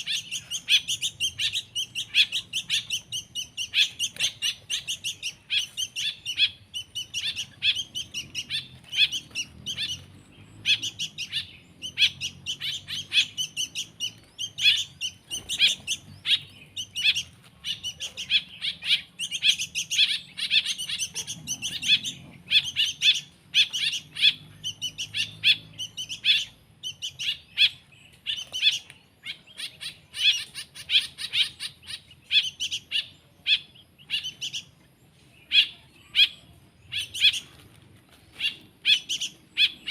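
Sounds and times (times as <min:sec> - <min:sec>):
songbird chicks begging calls: 0:00.0 - 0:39.9.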